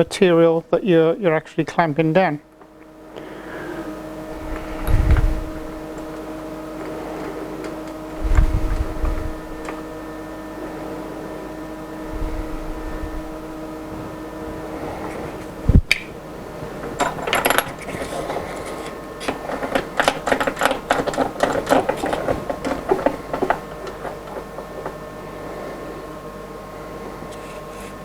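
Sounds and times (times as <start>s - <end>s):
machine electrical hum: 0.0s - 28.0s
metal clamps and tools clattering: 16.7s - 25.1s.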